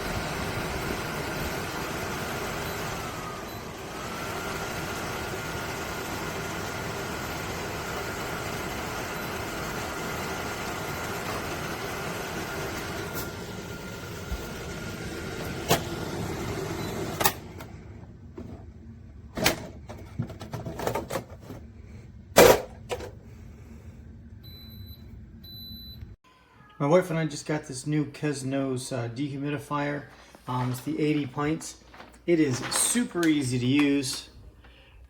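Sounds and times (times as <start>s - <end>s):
dehumidifier fan hum: 0.0s - 26.2s.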